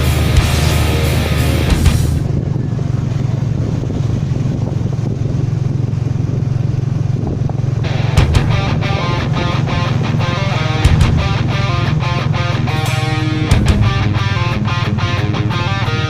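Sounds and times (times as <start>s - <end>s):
rock music with electric guitar: 0.0s - 2.3s, 7.7s - 16.0s
motorcycle engine running: 0.0s - 16.0s
road noise: 0.0s - 16.0s.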